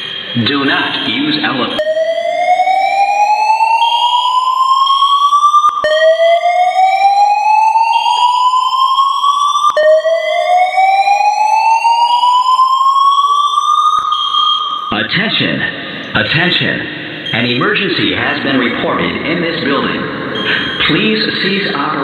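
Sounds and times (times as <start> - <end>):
alarm click: 0.0 - 2.2, 3.8 - 7.0, 20.3 - 21.1
slow-whoop fire alarm tone: 0.0 - 15.0, 20.1 - 21.2.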